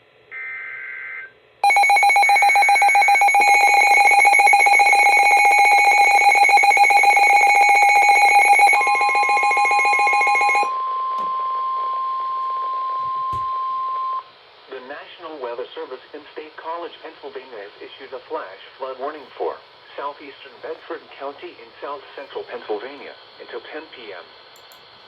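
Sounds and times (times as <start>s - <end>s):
rapidly pulsing alarm tone: 1.6s - 10.8s
steady warning tone: 1.6s - 14.2s.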